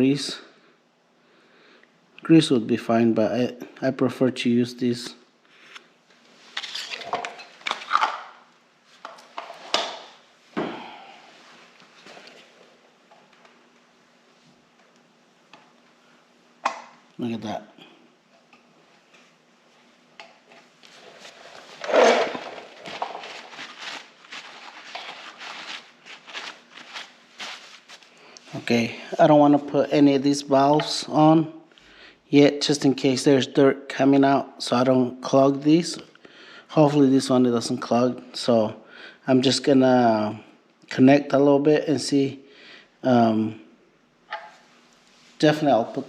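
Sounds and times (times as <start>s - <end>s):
scraping and rustling: 20.8s - 28.2s
loud clatter of metal parts: 21.8s - 23.6s.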